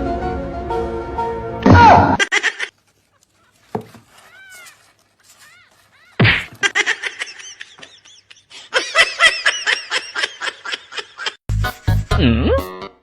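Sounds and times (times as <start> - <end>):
rapid high-pitched laughter: 2.1 - 11.4.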